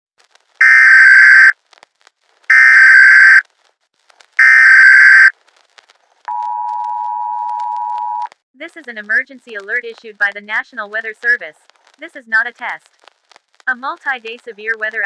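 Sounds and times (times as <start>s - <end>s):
screeching digital data tones: 0.6s - 1.5s, 2.5s - 3.4s, 4.4s - 5.3s
two-tone attention signal: 0.6s - 1.5s, 2.5s - 3.4s, 4.4s - 5.3s.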